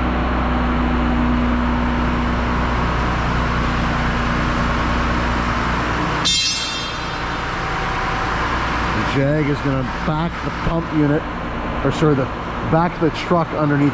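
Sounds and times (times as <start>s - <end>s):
truck engine running: 0.0s - 13.9s
high-pitched squeal: 3.7s - 11.2s.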